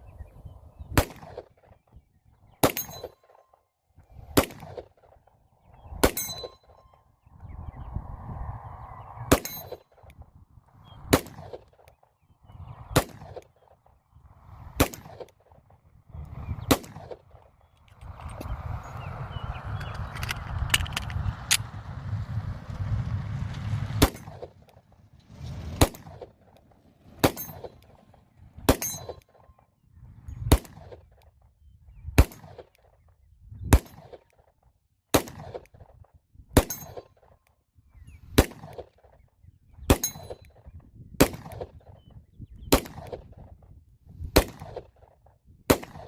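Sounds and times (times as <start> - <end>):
pistol shots with echo: 1.0 - 1.7, 2.6 - 3.2, 4.4 - 5.0, 6.0 - 6.6, 9.3 - 9.9, 11.1 - 12.0, 12.9 - 13.6, 14.8 - 15.4, 16.7 - 17.4, 24.0 - 24.5, 25.8 - 26.3, 27.2 - 27.9, 28.7 - 29.4, 30.5 - 31.1, 32.2 - 32.7, 33.7 - 34.3, 35.1 - 35.7, 38.4 - 39.0, 39.9 - 40.4, 41.2 - 41.8, 42.7 - 43.4, 44.4 - 45.0, 45.7 - 46.0.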